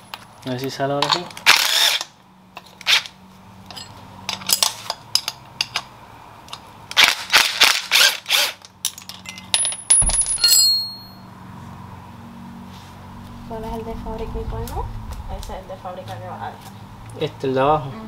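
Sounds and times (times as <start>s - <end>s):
metal tools clicking and knocking: 1.0s - 1.5s, 3.6s - 6.7s, 8.7s - 11.2s
metallic clink: 3.7s - 5.9s, 8.8s - 11.3s.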